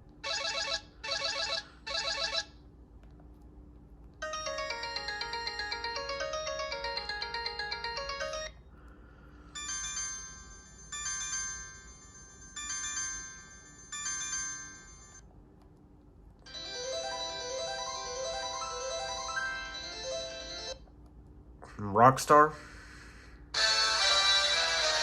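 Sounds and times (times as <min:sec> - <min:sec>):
phone ringtone melody: 0:00.2 - 0:02.5, 0:04.2 - 0:08.5, 0:09.6 - 0:15.2, 0:16.5 - 0:20.8, 0:23.6 - 0:25.0.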